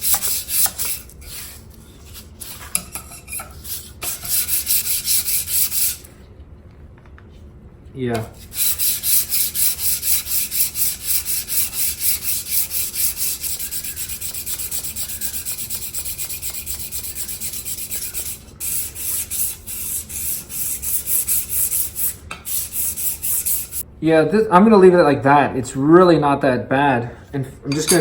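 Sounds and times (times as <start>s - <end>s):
hand rubbing strokes sanding: 0.0s - 2.7s, 3.6s - 6.1s, 8.3s - 23.8s.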